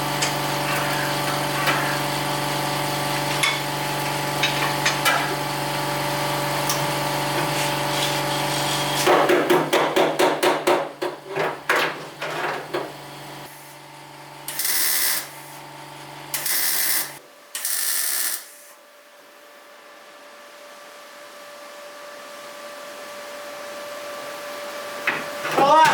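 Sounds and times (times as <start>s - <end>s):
machine hum: 0.0s - 9.1s.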